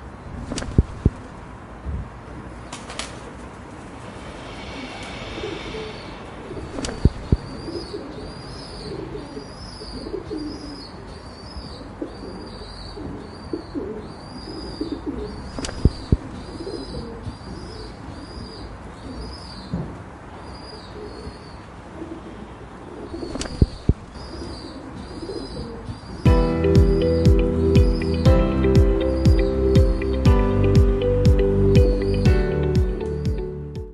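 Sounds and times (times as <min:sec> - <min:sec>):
pigeons cooing: 0:07.4 - 0:11.1, 0:11.7 - 0:19.4, 0:22.0 - 0:26.0
music: 0:26.3 - 0:33.9.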